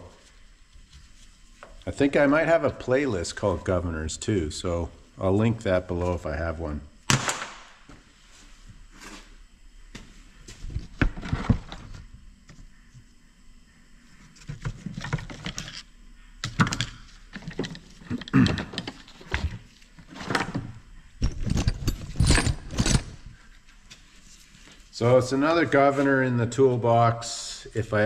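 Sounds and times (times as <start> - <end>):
metal parts clinking and clunking: 20.1 - 23.3.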